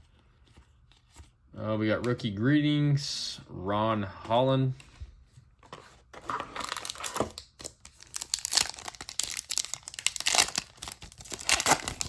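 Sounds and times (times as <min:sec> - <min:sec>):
foil wrapper crinkling and tearing: 0:06.6 - 0:12.0.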